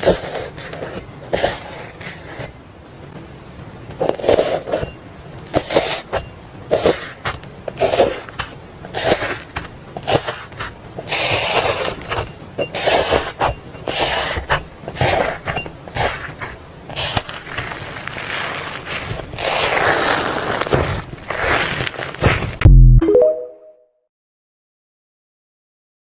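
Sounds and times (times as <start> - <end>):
slime squishing by hand: 4.0 - 22.7.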